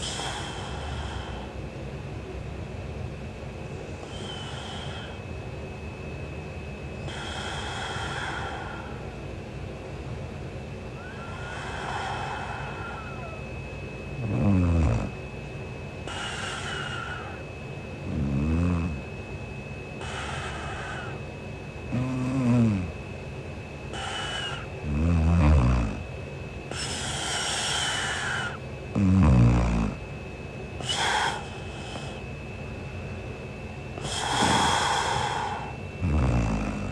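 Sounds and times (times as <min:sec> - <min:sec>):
breathy out-breath: 0:00.0 - 0:01.6, 0:04.0 - 0:05.3, 0:07.1 - 0:09.2, 0:11.0 - 0:13.5, 0:16.1 - 0:17.5, 0:20.0 - 0:21.3, 0:23.9 - 0:25.1, 0:26.7 - 0:28.6, 0:30.8 - 0:32.3, 0:34.0 - 0:36.9
woman snoring: 0:04.0 - 0:05.2, 0:07.1 - 0:09.0, 0:11.0 - 0:13.5, 0:14.2 - 0:15.2, 0:16.1 - 0:17.4, 0:18.0 - 0:19.2, 0:20.0 - 0:21.2, 0:21.9 - 0:23.1, 0:23.9 - 0:26.1, 0:26.7 - 0:30.0, 0:30.8 - 0:32.2, 0:34.0 - 0:36.9.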